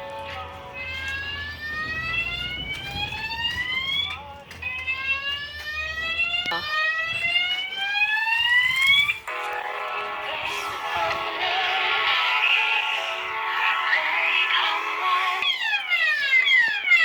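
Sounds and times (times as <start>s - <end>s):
fire alarm rising whoop tone: 0.9s - 4.2s, 12.0s - 17.0s.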